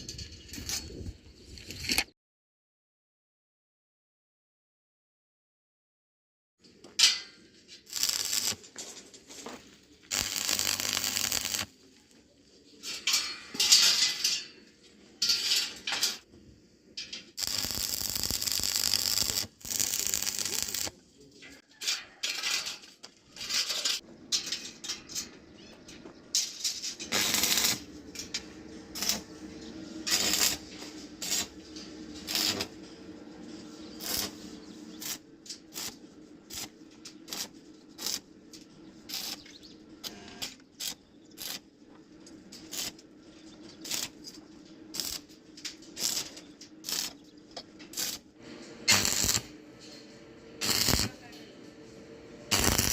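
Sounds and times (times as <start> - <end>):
welding noise: 7.8 - 12.1, 17.3 - 21.0, 26.3 - 52.9
steady hum: 26.3 - 52.9.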